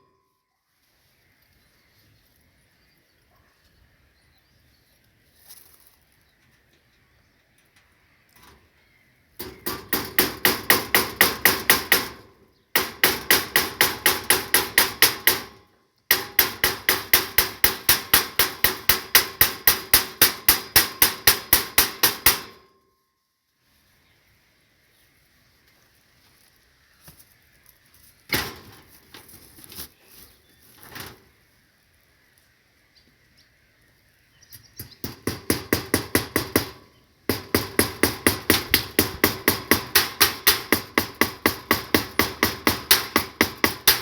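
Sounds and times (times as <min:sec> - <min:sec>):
hammer striking nails: 0:09.4 - 0:22.6, 0:34.8 - 0:44.0.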